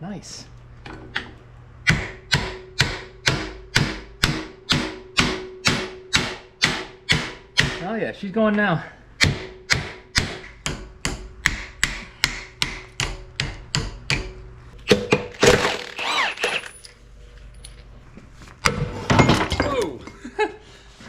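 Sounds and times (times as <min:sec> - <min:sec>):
hammer tapping steel: 0:01.8 - 0:07.9, 0:09.2 - 0:15.0.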